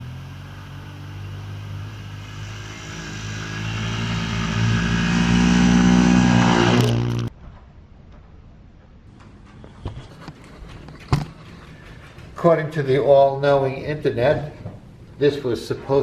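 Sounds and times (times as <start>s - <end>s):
vehicle engine running: 0.0s - 7.3s.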